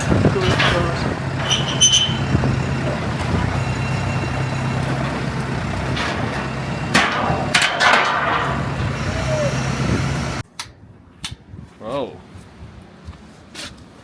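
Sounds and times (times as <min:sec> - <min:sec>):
diesel engine low hum: 0:00.0 - 0:10.4
harsh crashing bursts: 0:00.0 - 0:10.4.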